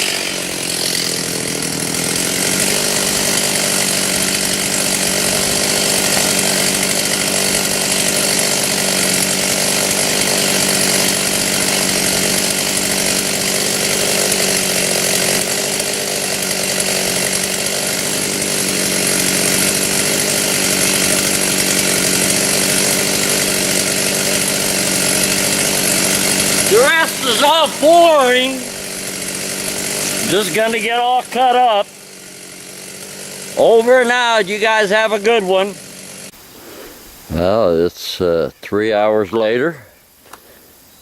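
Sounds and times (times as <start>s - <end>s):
chainsaw cutting wood: 0.0s - 36.4s.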